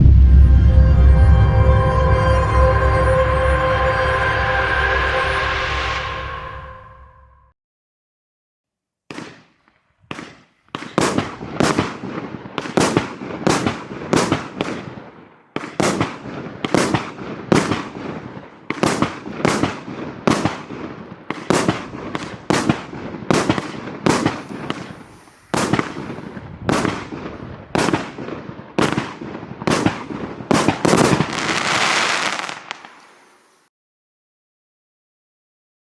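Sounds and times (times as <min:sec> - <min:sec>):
fireworks shots banging: 0:09.1 - 0:33.6
fireworks hissing burst: 0:24.0 - 0:26.4, 0:30.8 - 0:33.7.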